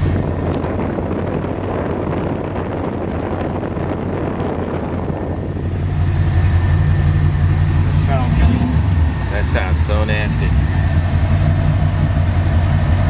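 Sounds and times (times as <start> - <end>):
car engine running: 0.0 - 13.0
wind across microphone: 0.0 - 13.0.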